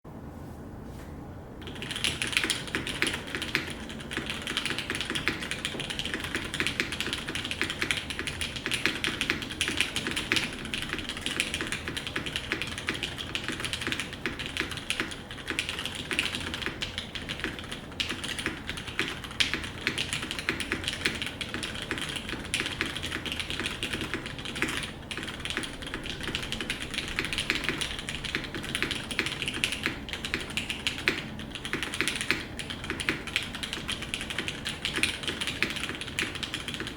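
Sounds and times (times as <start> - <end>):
mechanical keyboard typing: 1.6 - 36.9.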